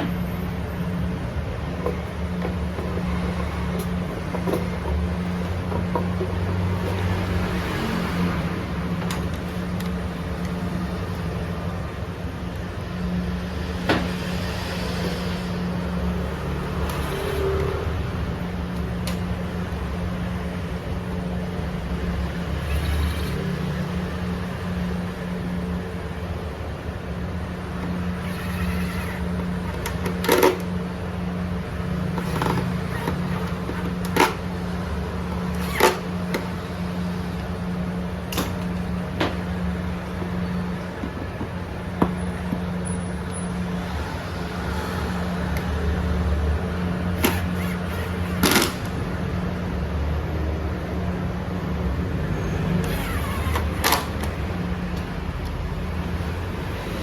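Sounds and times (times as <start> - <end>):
tools clicking and knocking: 47.2 - 49.0.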